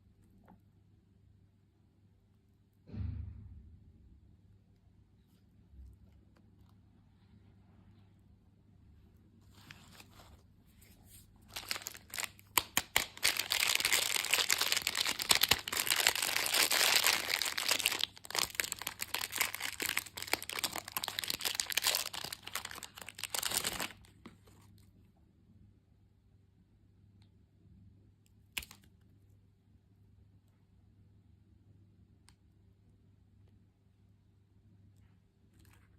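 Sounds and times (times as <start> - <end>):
candy wrapper crinkling: 11.4 - 24.6.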